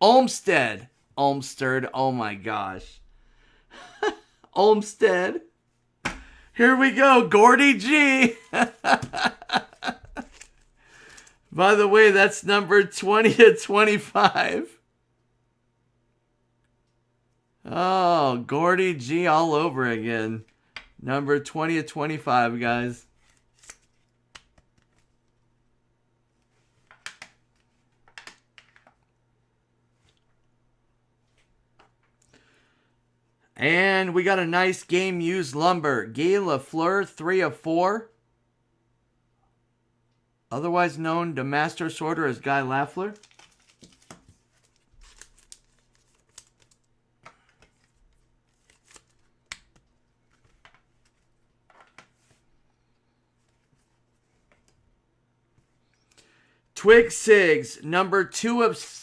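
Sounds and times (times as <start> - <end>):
trading cards clicking and rustling: 6.1 - 12.1, 23.2 - 25.2, 43.1 - 52.4.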